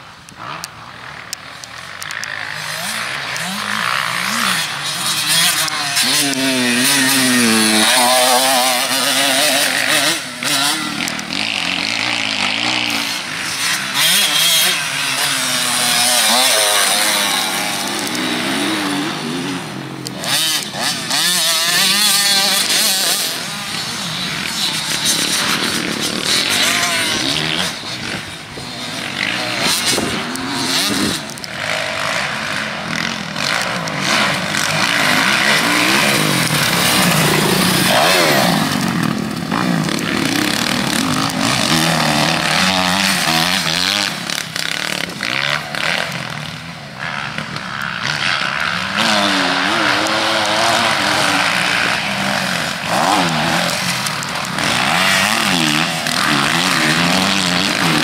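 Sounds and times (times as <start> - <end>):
constant rush of noise: 0.0 - 58.0
motocross bike engine revving: 0.3 - 58.0.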